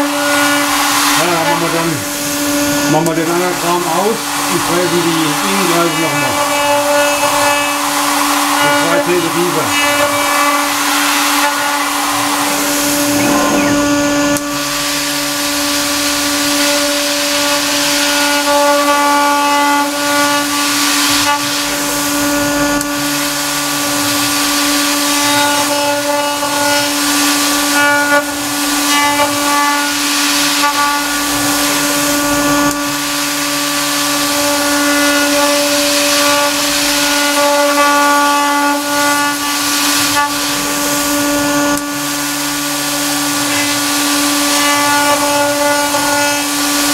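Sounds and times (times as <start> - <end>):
mist cooling hiss: 0.0 - 18.5
axis drives humming: 0.0 - 46.9
router spindle whine: 0.0 - 46.9.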